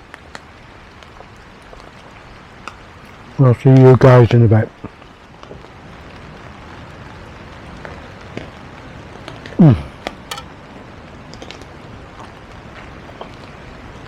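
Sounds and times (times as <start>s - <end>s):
rain falling: 0.0s - 14.0s.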